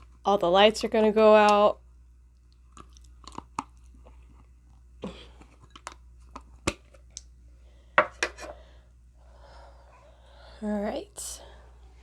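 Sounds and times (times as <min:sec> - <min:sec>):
chewing food with crunches: 0:02.3 - 0:07.3
wet mouth clicks: 0:02.4 - 0:04.5.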